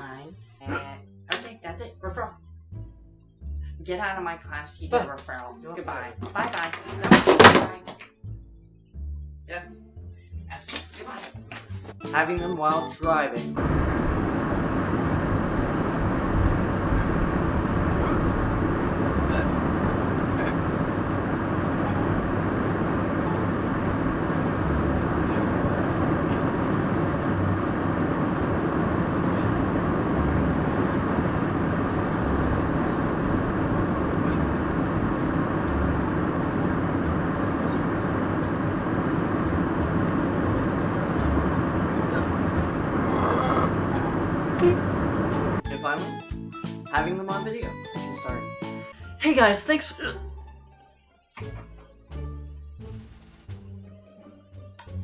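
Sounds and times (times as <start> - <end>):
car road and engine noise: 13.6 - 45.6
low rumble: 13.6 - 45.6.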